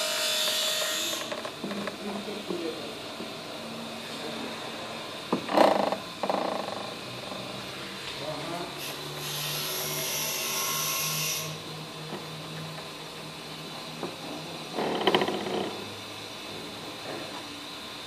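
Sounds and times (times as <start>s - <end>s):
strut mounts creaking and grating: 5.4s - 7.4s, 14.7s - 15.8s.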